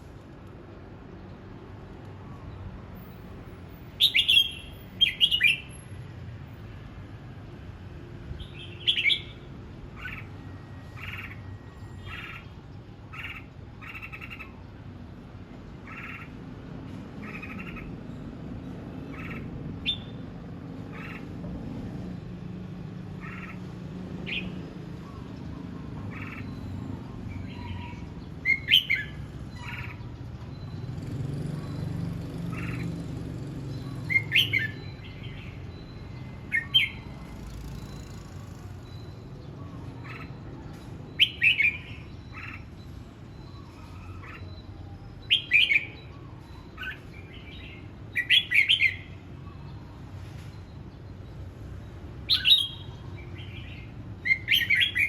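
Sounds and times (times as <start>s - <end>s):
bird chirping: 3.9s - 5.8s, 8.4s - 12.5s, 17.2s - 20.3s, 23.2s - 55.0s
sweeping bird phrases: 3.9s - 5.8s, 24.2s - 55.0s.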